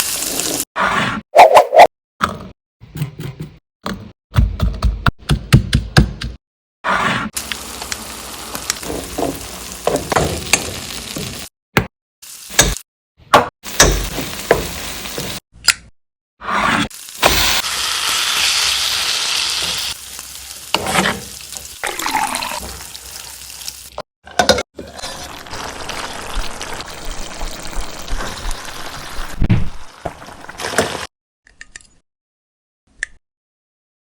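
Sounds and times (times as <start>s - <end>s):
food sizzling in a frying pan: 0.0s - 0.6s, 7.4s - 11.5s, 12.2s - 12.8s, 13.7s - 15.4s, 16.9s - 24.0s, 24.9s - 31.1s.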